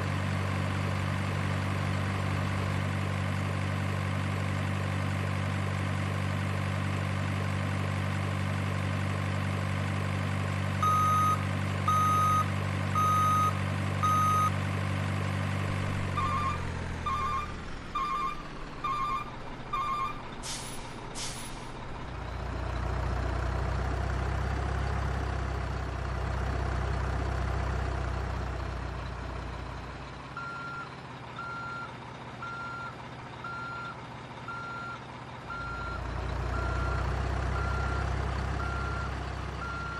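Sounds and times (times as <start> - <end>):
diesel engine drone: 0.0 - 39.9
reversing beeps: 10.8 - 14.6, 16.1 - 20.2, 30.4 - 39.9
air-brake hisses: 20.4 - 21.8.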